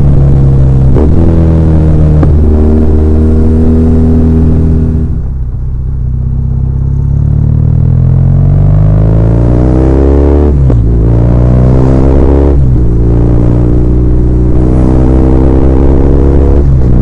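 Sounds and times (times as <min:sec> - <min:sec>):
motorcycle engine running: 0:00.0 - 0:09.7.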